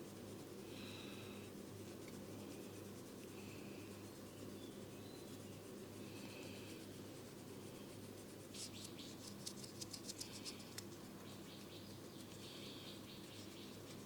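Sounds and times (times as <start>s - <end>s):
faint steady hum: 0.0s - 14.0s
scratchy rustle of hair: 1.5s - 11.2s, 13.2s - 14.0s.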